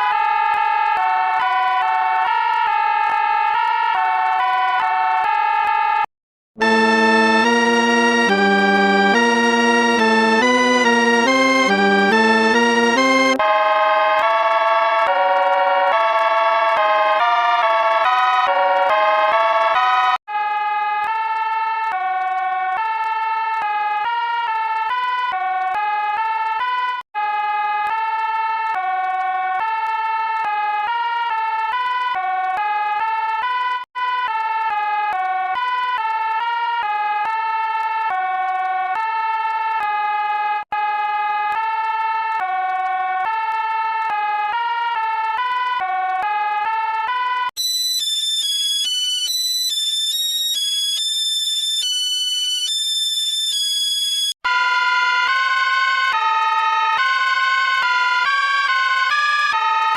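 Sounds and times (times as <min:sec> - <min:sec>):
electronic alert alarm tones: 0:06.6 - 0:13.4.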